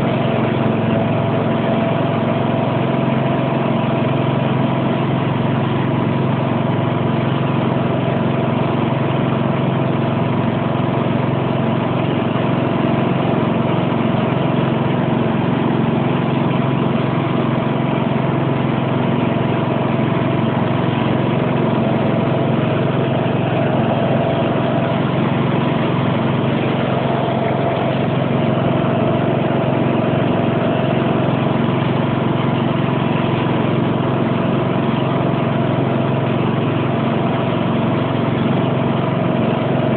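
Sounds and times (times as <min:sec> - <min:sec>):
garden tractor engine running: 0:00.0 - 0:39.9.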